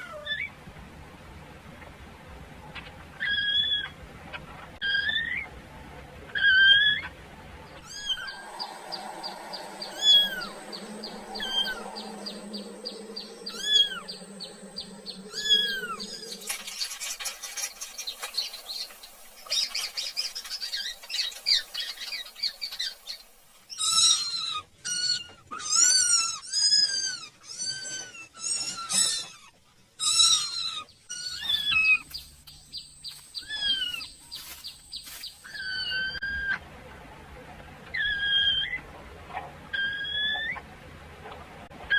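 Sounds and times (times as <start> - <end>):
young animal crying: 4.8 - 5.5, 7.8 - 16.6, 23.7 - 32.1, 33.4 - 34.1, 35.4 - 36.6, 37.8 - 38.8, 39.7 - 40.6.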